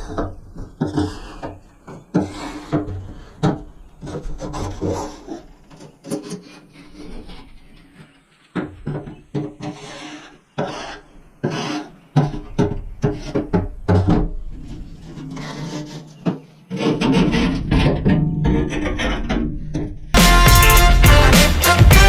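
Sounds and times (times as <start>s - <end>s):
hand scraping metal smoker: 8.8s - 19.6s
loud music: 20.2s - 22.0s.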